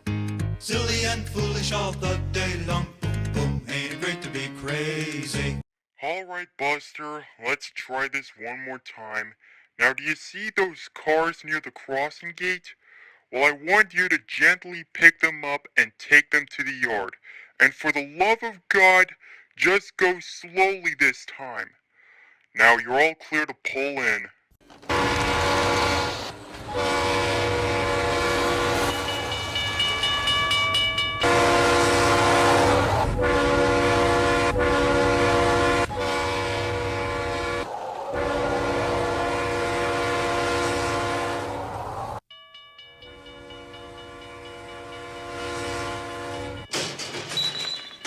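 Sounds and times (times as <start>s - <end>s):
train horn blasts: 24.9s - 30.3s, 31.2s - 41.8s, 43.4s - 46.7s.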